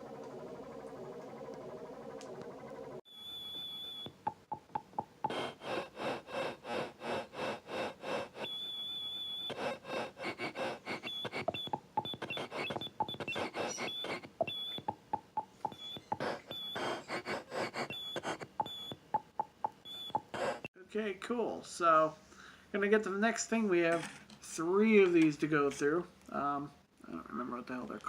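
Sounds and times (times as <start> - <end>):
high whistling tone: 0.0 - 4.3, 8.4 - 9.6, 10.9 - 15.0
electronic blips and clicks: 0.0 - 5.4, 11.0 - 16.8, 17.9 - 20.4
buzzy synth pulses: 0.0 - 5.6, 8.3 - 17.0.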